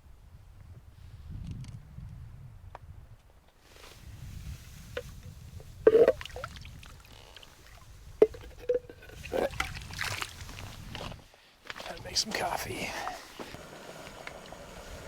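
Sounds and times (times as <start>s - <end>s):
short knocks and clinks: 5.9s - 6.4s, 8.2s - 9.5s.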